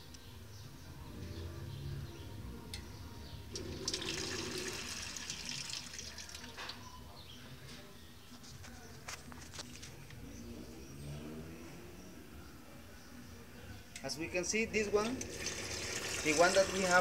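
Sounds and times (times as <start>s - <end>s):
water running from tubes: 3.5s - 6.7s, 14.9s - 17.0s.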